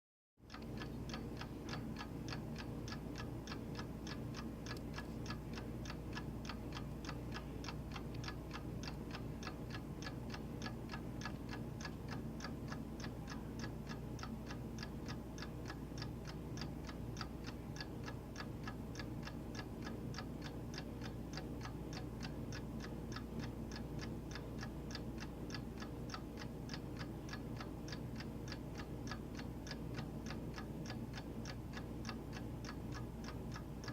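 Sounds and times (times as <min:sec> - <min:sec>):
clock ticking: 0:00.5 - 0:33.9
low steady hum: 0:00.5 - 0:33.9.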